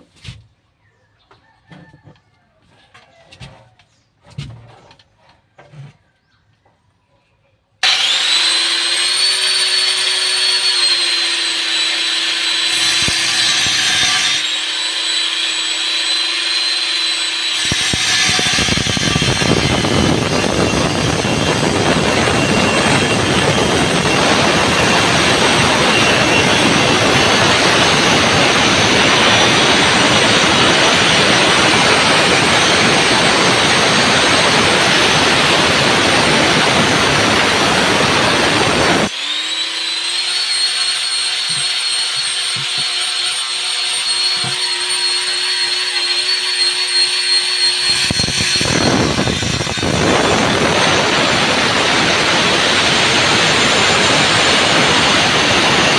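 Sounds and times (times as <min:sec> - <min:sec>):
power tool cutting: 0:07.8 - 0:55.9
motor whining unloaded: 0:46.0 - 0:55.9.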